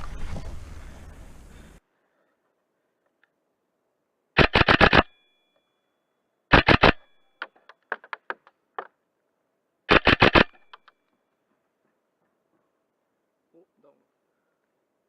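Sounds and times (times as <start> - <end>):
airsoft gun full-auto bursts: 4.4 - 5.1, 6.5 - 7.1, 9.9 - 10.8.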